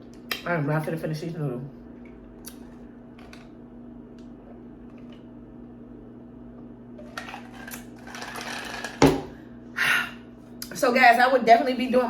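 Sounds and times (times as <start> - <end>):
low room hum: 0.0 - 12.0.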